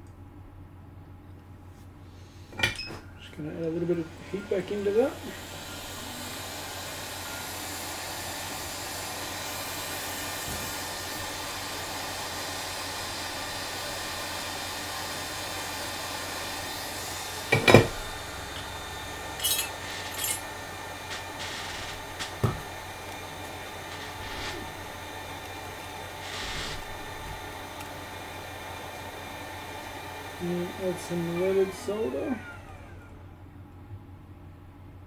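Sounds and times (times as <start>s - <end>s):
hot air station blowing: 2.0s - 33.4s
light metallic clinks: 17.6s - 22.7s.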